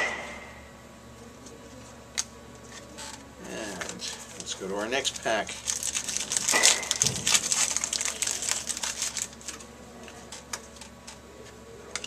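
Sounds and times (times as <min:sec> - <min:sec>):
wrapper crinkling: 0:03.0 - 0:11.2.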